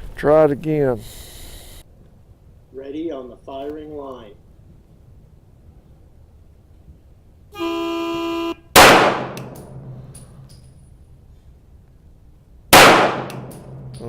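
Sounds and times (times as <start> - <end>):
pistol shot: 8.8 - 9.8, 12.7 - 14.0.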